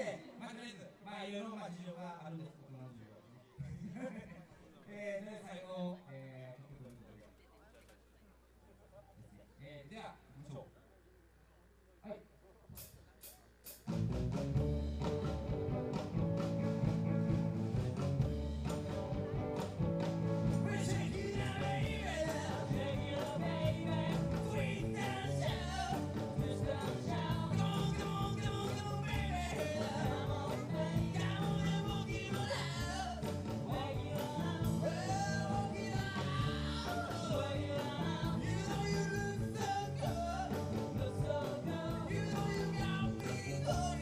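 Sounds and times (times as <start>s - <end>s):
live rock band playing: 13.6s - 44.0s
steady bass line: 13.9s - 44.0s
lead vocal singing: 20.4s - 44.0s.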